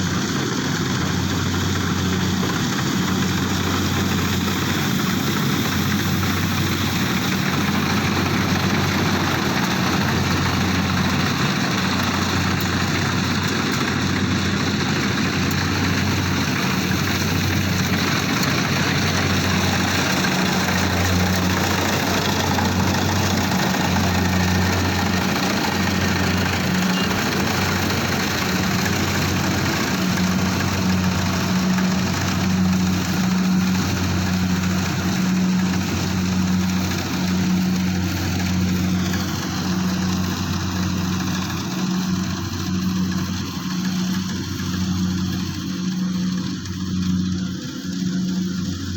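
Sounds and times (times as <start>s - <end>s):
machine engine humming: 0.0s - 48.9s.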